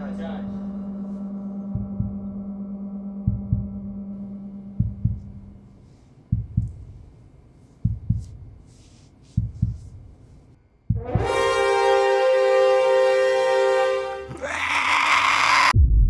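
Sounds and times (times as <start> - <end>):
heartbeat thumps: 1.7 - 2.4, 3.2 - 5.7, 6.3 - 11.5.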